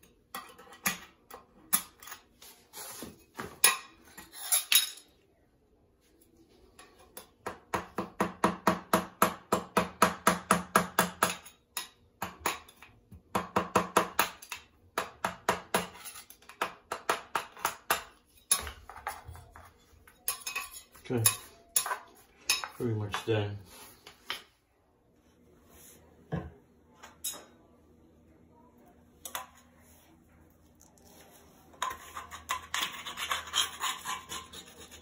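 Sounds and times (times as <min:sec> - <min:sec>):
metal spatula scraping adhesive: 0:31.0 - 0:35.0.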